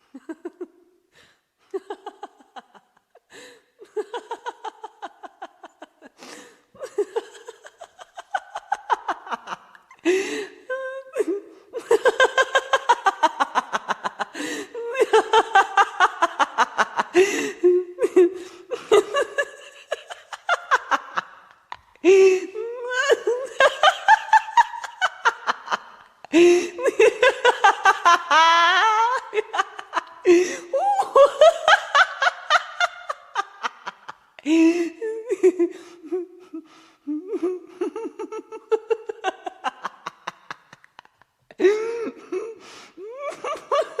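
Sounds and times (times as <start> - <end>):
person laughing: 0.0 - 0.7, 1.7 - 44.0
gasping in-breaths: 3.3 - 3.8, 6.1 - 6.8, 9.8 - 10.7, 14.3 - 14.8, 17.1 - 17.7, 26.2 - 26.8, 30.2 - 30.9, 34.4 - 35.0, 35.7 - 37.2, 41.5 - 43.1.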